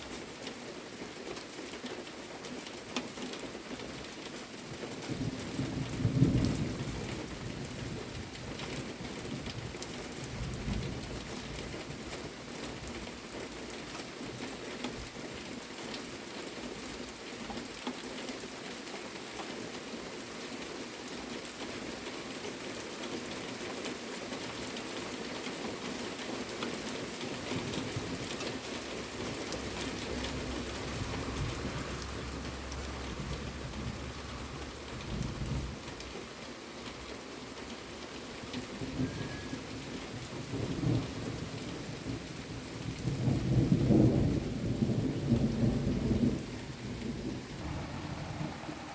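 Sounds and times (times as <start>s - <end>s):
rain pattering on surfaces: 0.0s - 48.9s
low rumble of thunder: 5.0s - 13.0s, 27.4s - 36.4s, 37.9s - 48.9s.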